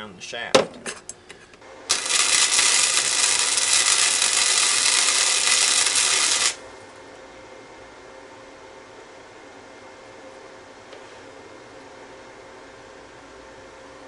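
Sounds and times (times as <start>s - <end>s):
faint steady hum: 0.0s - 14.0s
arc welding crackling hiss: 1.8s - 6.6s.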